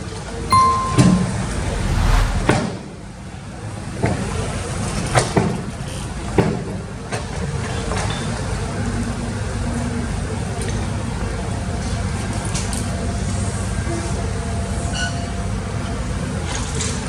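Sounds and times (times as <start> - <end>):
high steady tone: 0.5 - 2.6.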